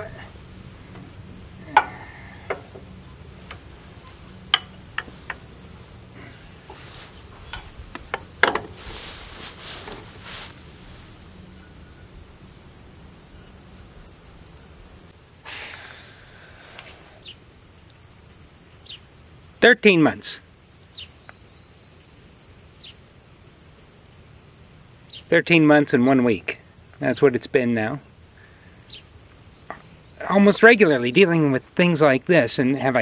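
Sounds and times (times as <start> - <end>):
crickets chirring: 0.0 - 33.0
sharp clicks and knocks: 4.5 - 5.4, 7.4 - 8.8.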